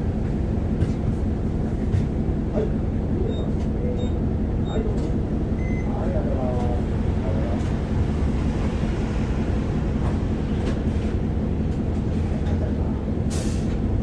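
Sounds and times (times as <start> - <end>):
bus diesel engine rumble: 0.0 - 14.0.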